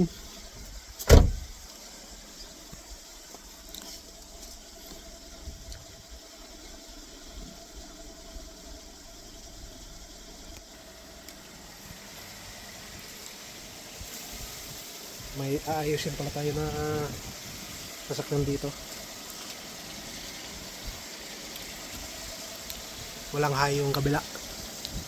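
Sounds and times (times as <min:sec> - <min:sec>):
loud thump: 0:01.0 - 0:01.6.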